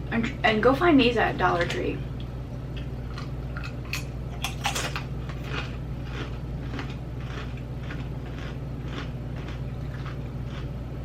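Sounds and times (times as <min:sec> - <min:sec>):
mouth crunching chips: 0:03.2 - 0:10.7.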